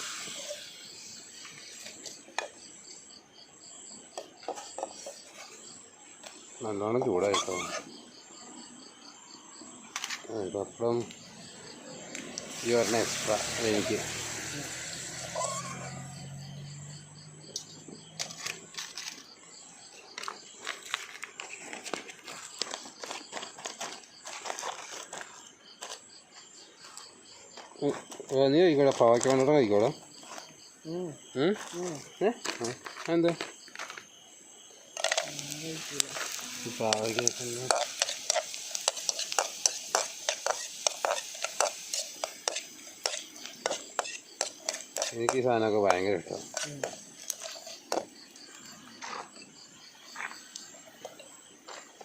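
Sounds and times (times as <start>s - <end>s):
food sizzling in oil: 0.0s - 2.6s, 11.4s - 18.5s, 35.0s - 48.7s
metal spatula scraping a pan: 36.2s - 48.1s
utensils clicking on dishes: 36.6s - 45.4s.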